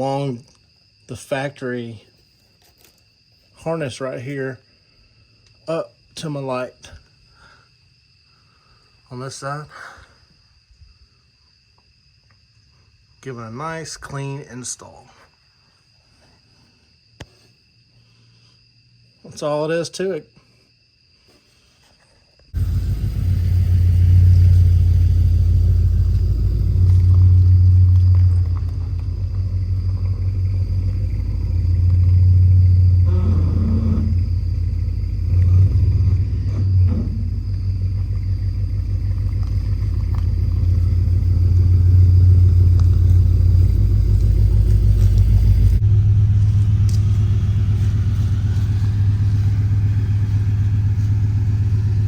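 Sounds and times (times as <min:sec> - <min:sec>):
pickup truck engine idling: 0:22.6 - 0:33.2, 0:34.1 - 0:52.0.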